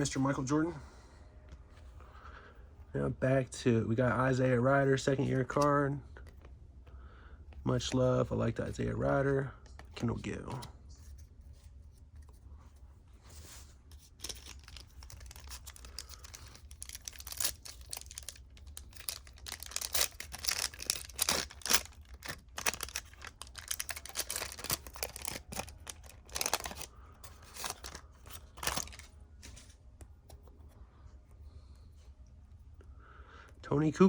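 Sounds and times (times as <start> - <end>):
faint low hum: 0.0 - 34.0
wrapper tearing and crinkling: 14.2 - 29.1.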